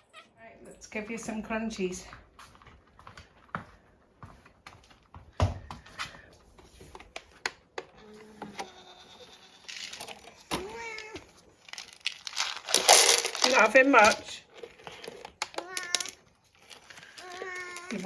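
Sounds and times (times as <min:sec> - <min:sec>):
cat biscuits clicking: 0:09.7 - 0:18.0
cat meowing: 0:17.2 - 0:18.0.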